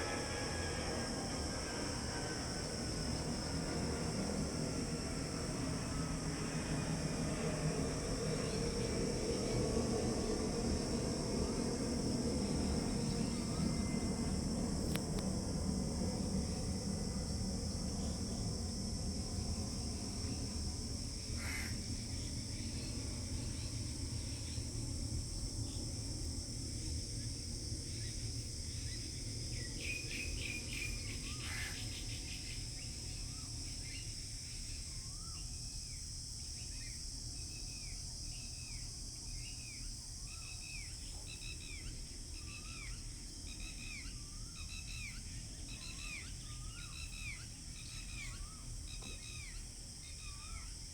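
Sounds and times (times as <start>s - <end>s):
insects droning: 0.0s - 50.9s.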